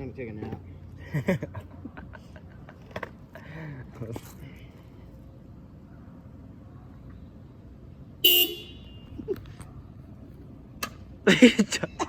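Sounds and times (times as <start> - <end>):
car horn honk: 8.2 - 9.2.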